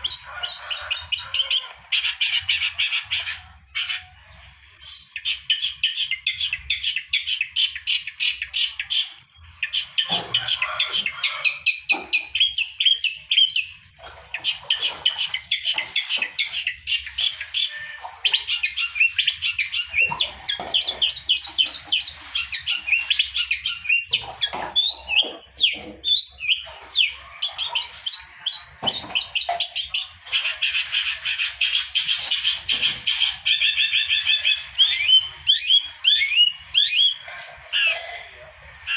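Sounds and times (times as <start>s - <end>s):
bird singing high chattering notes: 11.4s - 38.2s.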